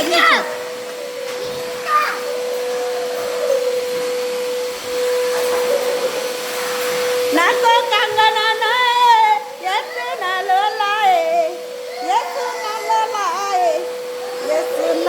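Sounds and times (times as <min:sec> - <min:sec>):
child's voice: 0:00.0 - 0:00.6, 0:01.4 - 0:02.4, 0:09.6 - 0:13.8
vacuum cleaner running: 0:00.0 - 0:15.0.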